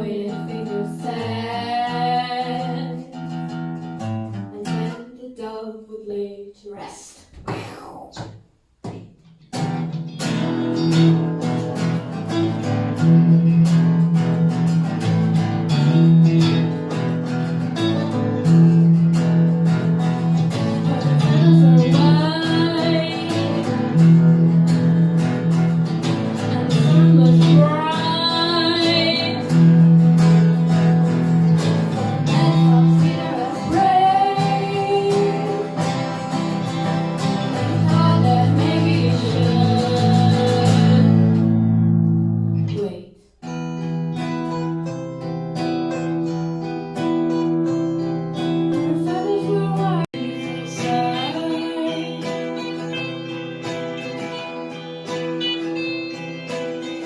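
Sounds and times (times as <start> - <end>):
person singing: 0.0 - 3.2, 20.5 - 25.5, 26.1 - 30.3, 31.6 - 41.6, 48.4 - 57.0
strummed acoustic guitar: 0.0 - 5.2, 7.4 - 57.0.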